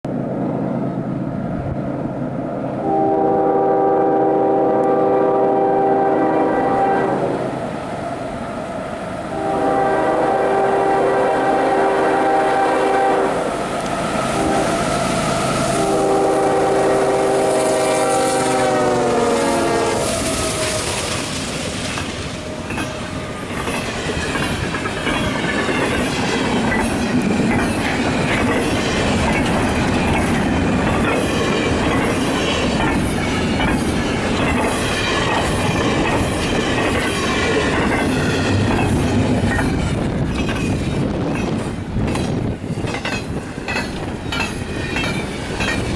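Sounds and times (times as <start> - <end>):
train horn chord: 2.8 - 7.6, 8.2 - 20.9
train wheels clattering: 13.7 - 45.9.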